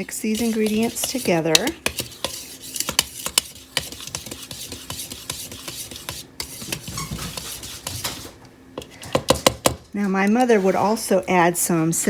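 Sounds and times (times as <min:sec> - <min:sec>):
dry ingredients scraping in bowl: 0:00.0 - 0:08.4, 0:10.2 - 0:11.5.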